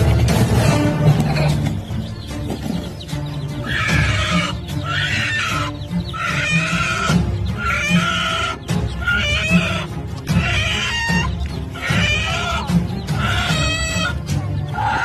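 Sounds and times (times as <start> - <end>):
music with a steady beat: 0.0 - 4.9
chicken squawking: 1.1 - 15.0.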